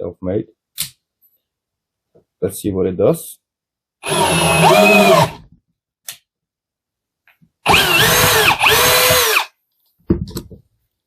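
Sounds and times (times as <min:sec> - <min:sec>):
drill motor whine: 0:04.0 - 0:05.4, 0:07.7 - 0:09.5.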